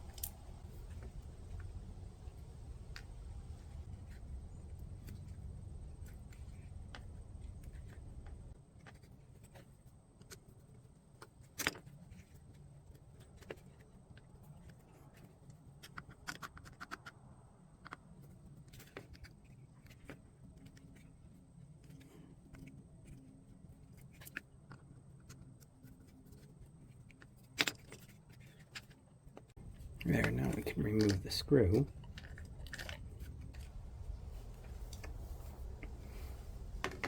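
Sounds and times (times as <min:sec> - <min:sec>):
low hum: 0:00.0 - 0:08.6, 0:29.6 - 0:37.0.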